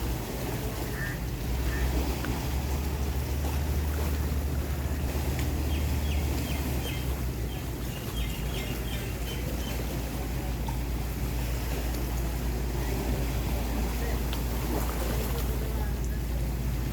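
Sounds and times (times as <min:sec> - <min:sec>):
boat engine running: 0:00.0 - 0:16.9.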